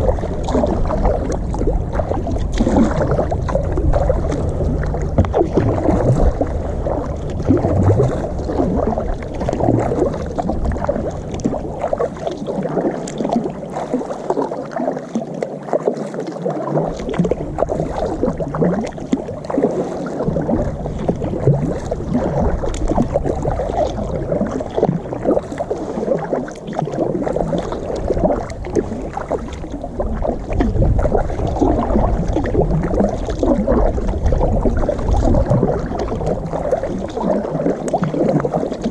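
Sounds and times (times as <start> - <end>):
water splashing around kayak: 0.0 - 38.9
wind rumble on microphone: 0.0 - 38.9.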